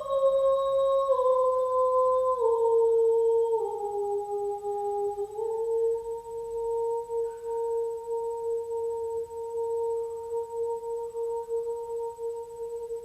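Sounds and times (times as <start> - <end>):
woman humming a melody: 0.0 - 13.0.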